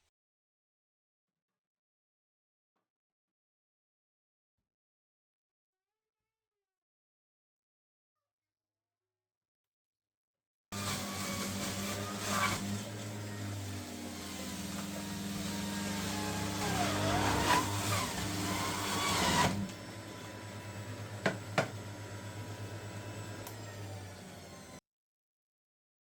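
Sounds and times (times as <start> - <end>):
appliance motor humming: 10.8 - 24.8.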